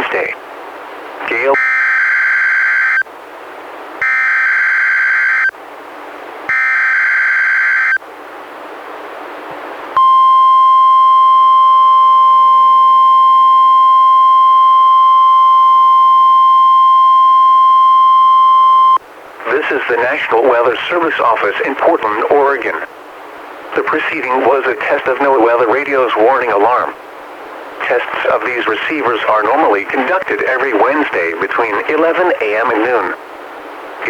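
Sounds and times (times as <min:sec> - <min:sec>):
buzzing data tone bursts: 0:01.3 - 0:03.0, 0:04.0 - 0:05.5, 0:06.5 - 0:08.0
steady high alarm tone: 0:01.6 - 0:03.0, 0:04.0 - 0:05.5, 0:06.5 - 0:08.0, 0:10.0 - 0:19.0.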